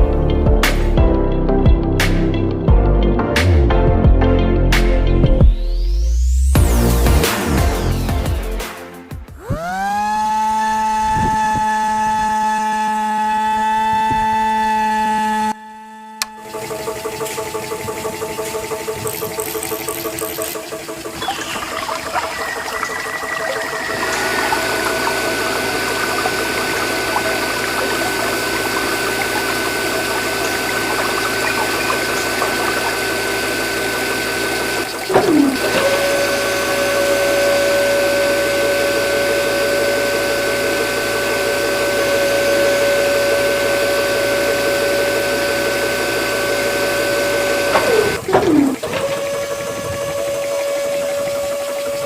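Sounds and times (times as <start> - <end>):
small pump motor whine: 9.3 - 52.0
moving water: 17.3 - 37.3, 47.8 - 52.0.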